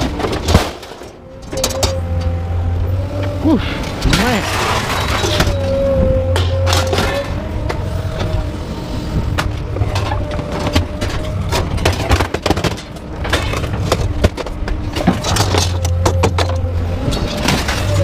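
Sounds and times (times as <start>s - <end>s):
engine running steadily: 0.0s - 18.0s
scrap metal clattering and banging: 0.0s - 18.0s.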